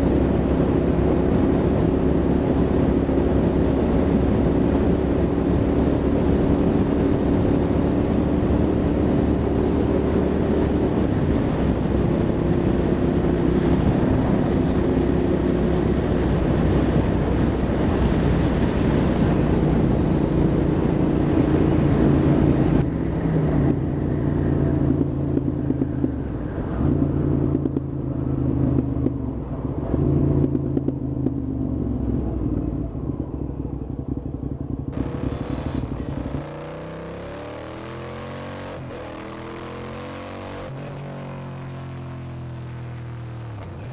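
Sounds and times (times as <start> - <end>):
wind noise rushing: 0.0 - 25.0
motorcycle engine running: 0.0 - 43.9.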